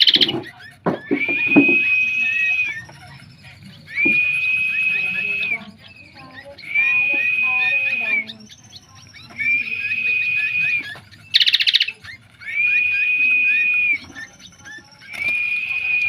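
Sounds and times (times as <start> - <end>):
small bird chirps: 0.0 - 16.0
long high bird whistle: 3.9 - 5.6, 6.7 - 8.3, 12.4 - 14.0.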